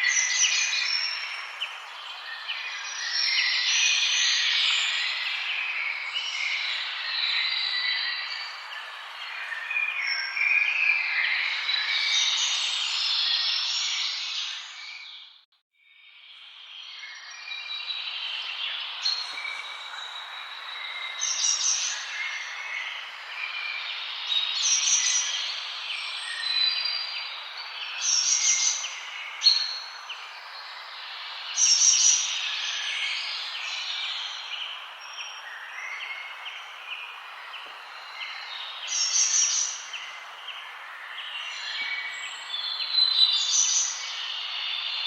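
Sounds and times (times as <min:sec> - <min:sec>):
birds chirping and singing: 0:17.0 - 0:45.0.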